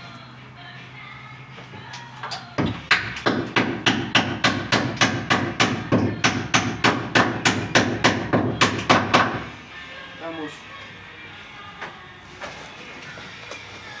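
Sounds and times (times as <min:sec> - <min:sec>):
hammer striking wood: 0:02.6 - 0:09.5.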